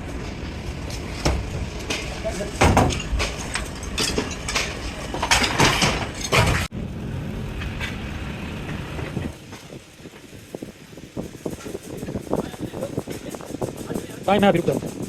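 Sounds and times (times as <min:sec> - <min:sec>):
mechanical rumble: 0:00.0 - 0:15.0
loud knocks and clatter: 0:00.9 - 0:06.7.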